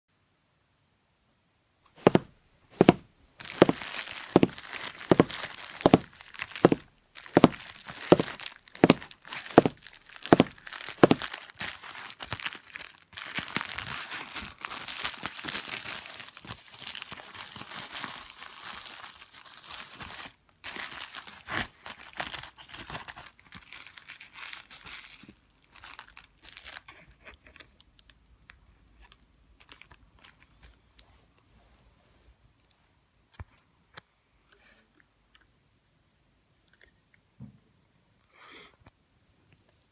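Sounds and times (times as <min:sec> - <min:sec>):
sharp knocks on parcel: 0:02.0 - 0:06.8
packaging crinkling and tearing: 0:03.4 - 0:28.2, 0:29.0 - 0:31.1.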